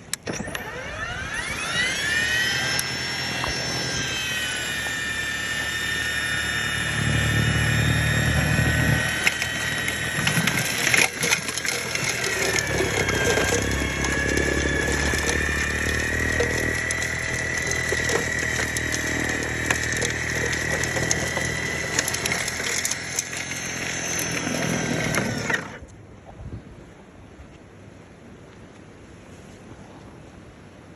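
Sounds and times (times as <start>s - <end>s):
snowblower electric whine: 0.0s - 25.9s
short clatter: 8.3s - 25.9s.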